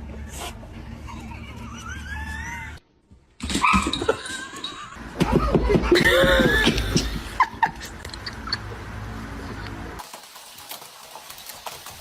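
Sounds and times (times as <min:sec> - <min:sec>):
pet animal wavering cries: 0:00.2 - 0:02.8.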